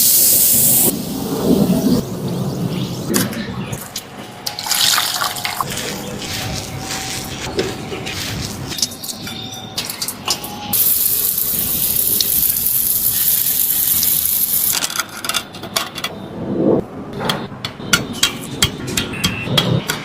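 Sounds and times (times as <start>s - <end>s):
steady hiss: 0.0s - 1.4s, 10.8s - 14.8s.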